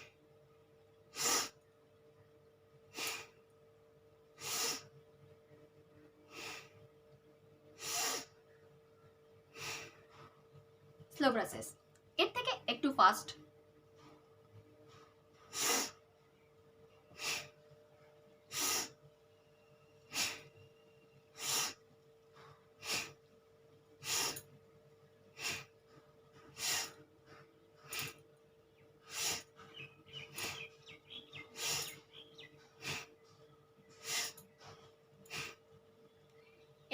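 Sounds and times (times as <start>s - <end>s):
faint steady hum: 0.0s - 36.9s
forceful breathing through nose: 1.1s - 1.6s, 2.9s - 3.4s, 4.4s - 4.9s, 6.3s - 6.8s, 7.8s - 8.4s, 9.5s - 10.3s, 15.0s - 16.0s, 17.1s - 17.6s, 18.5s - 19.0s, 20.1s - 20.6s, 21.3s - 21.8s, 22.4s - 23.3s, 24.0s - 24.5s, 25.2s - 28.2s, 29.0s - 33.3s, 33.9s - 35.7s.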